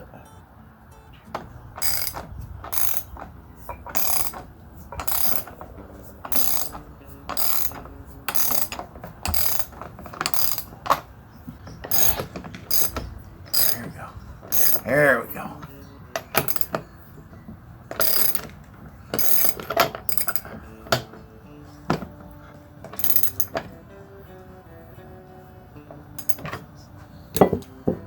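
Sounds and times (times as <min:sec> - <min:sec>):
ratchet wrench clicking: 0:01.8 - 0:11.1, 0:11.7 - 0:13.8, 0:14.4 - 0:14.9, 0:16.1 - 0:16.8, 0:17.9 - 0:21.1, 0:22.9 - 0:23.7, 0:26.2 - 0:26.6.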